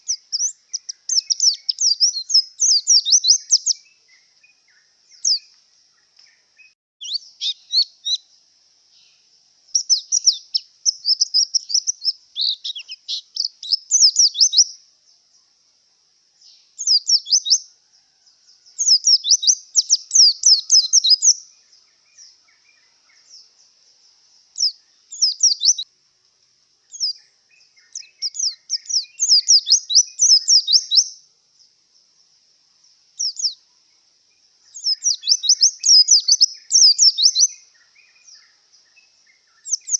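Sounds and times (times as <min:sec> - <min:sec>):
bird twittering: 0:00.0 - 0:08.2, 0:08.9 - 0:14.8, 0:16.4 - 0:17.7, 0:18.8 - 0:21.5, 0:24.6 - 0:25.9, 0:26.9 - 0:31.2, 0:33.2 - 0:33.6, 0:34.6 - 0:39.9.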